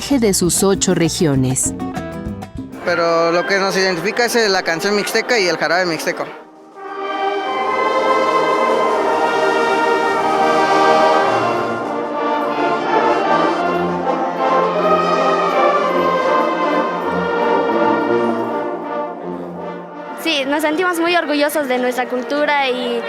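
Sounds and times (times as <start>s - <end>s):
wind band playing slow piece: 2.8s - 20.5s.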